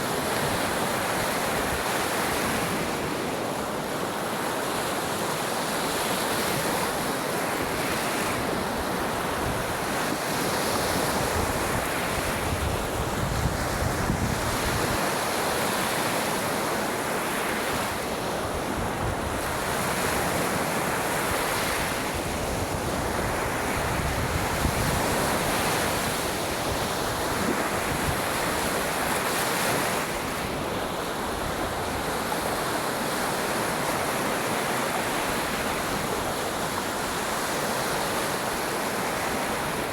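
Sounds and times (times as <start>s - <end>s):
waves breaking on shore: 0.0s - 39.9s
wind buffeting microphone: 11.1s - 15.1s.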